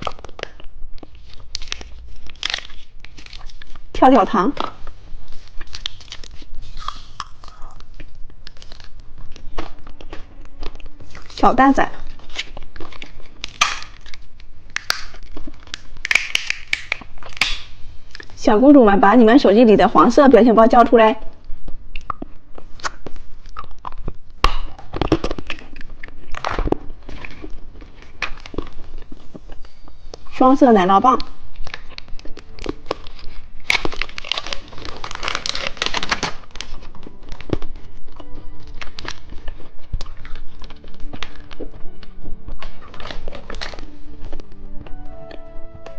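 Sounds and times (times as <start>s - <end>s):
candy packaging crackling: 0.0s - 18.4s, 19.0s - 45.9s
plastic wrapper crinkling and tearing: 0.0s - 18.4s, 21.4s - 30.4s, 31.1s - 45.9s.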